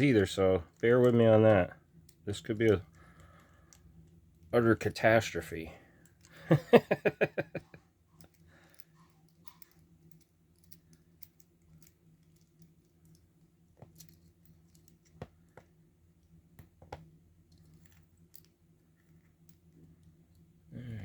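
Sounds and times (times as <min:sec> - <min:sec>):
faint steady hum: 0:00.0 - 0:21.0
small clicks of lock tools: 0:08.2 - 0:15.7.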